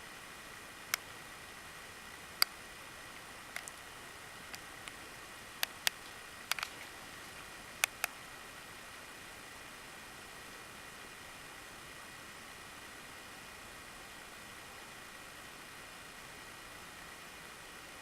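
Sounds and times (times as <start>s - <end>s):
faint hiss: 0.0s - 18.0s
sharp short clicks: 5.6s - 6.9s, 7.8s - 8.1s.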